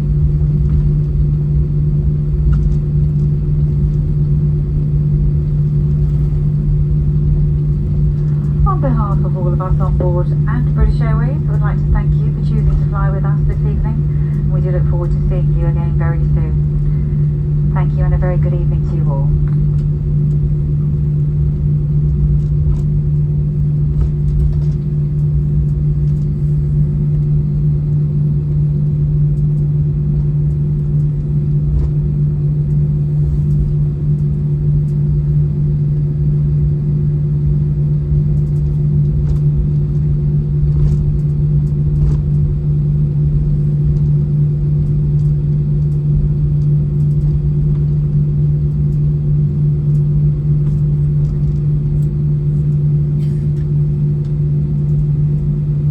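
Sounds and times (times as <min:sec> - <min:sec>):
aircraft engines idling: 0:00.0 - 0:55.9
cabin air conditioning hum: 0:00.0 - 0:55.9
faint clicks and rattles: 0:02.4 - 0:04.1, 0:07.7 - 0:15.3, 0:38.3 - 0:42.7, 0:43.4 - 0:49.2, 0:49.9 - 0:55.4.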